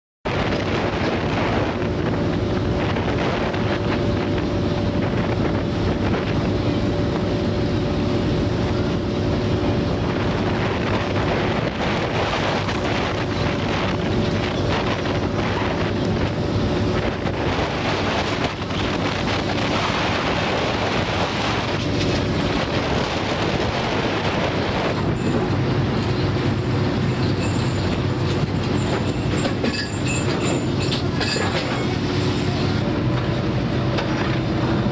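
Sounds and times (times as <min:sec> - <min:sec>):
rushing wind: 0:00.2 - 0:34.9
boat engine running: 0:00.3 - 0:34.9
water noise: 0:00.3 - 0:34.9.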